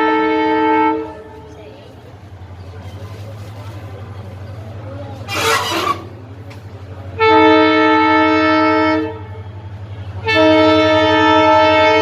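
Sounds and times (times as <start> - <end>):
train horn blasts: 0.0 - 1.4, 5.3 - 6.1, 7.2 - 12.0.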